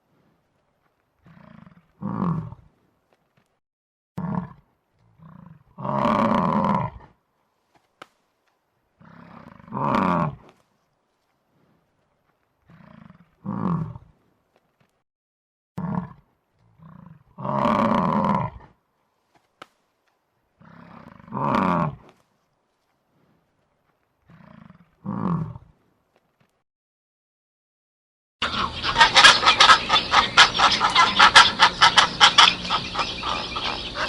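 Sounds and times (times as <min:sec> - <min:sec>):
big cat roaring: 0:01.2 - 0:02.7, 0:04.2 - 0:07.2, 0:09.0 - 0:10.5, 0:12.6 - 0:14.1, 0:15.8 - 0:18.8, 0:20.6 - 0:22.1, 0:24.3 - 0:25.7.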